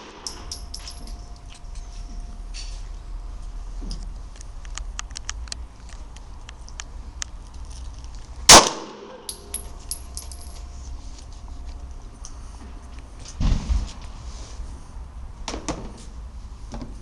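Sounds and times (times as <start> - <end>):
metallic clinks: 0.0 - 1.9, 9.2 - 10.7
pistol shot: 8.5 - 9.1.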